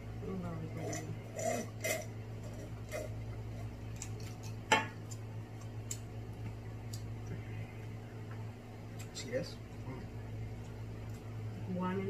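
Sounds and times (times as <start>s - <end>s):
steady low hum: 0.0s - 12.0s
crab shells clicking and cracking: 3.9s - 6.1s.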